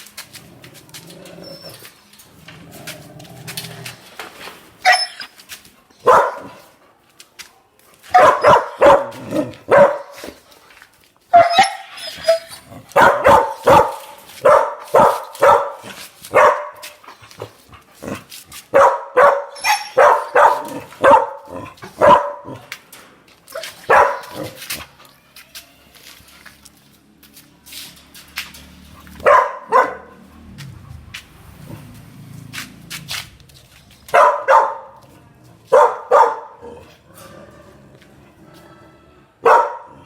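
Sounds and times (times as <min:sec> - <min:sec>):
dog barking loudly: 0:06.0 - 0:06.6, 0:08.1 - 0:10.4, 0:11.3 - 0:17.0, 0:18.7 - 0:22.6, 0:23.6 - 0:24.6, 0:29.2 - 0:30.5, 0:34.1 - 0:35.0, 0:35.7 - 0:36.8, 0:39.4 - 0:40.0.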